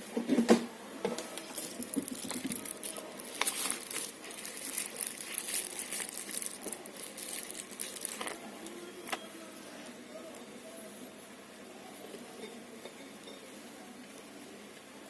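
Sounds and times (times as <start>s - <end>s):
parts and tools being handled: 1.2s - 8.5s.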